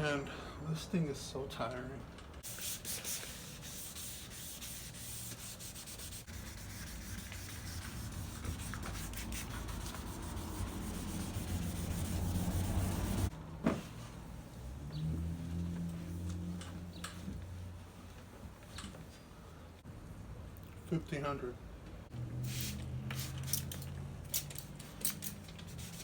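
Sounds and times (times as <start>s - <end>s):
sandpaper rasping on plastic: 2.4s - 13.3s, 25.6s - 26.0s.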